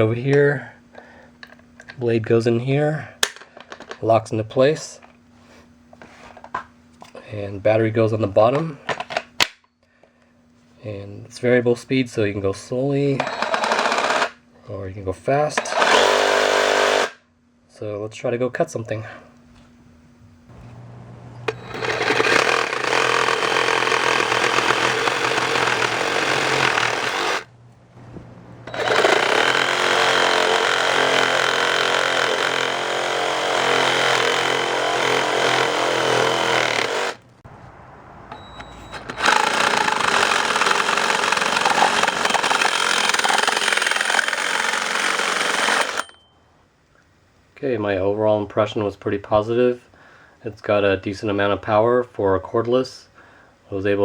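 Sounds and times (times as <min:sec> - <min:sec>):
reciprocating saw cutting: 0:21.5 - 0:27.5, 0:28.6 - 0:37.2, 0:39.0 - 0:46.1.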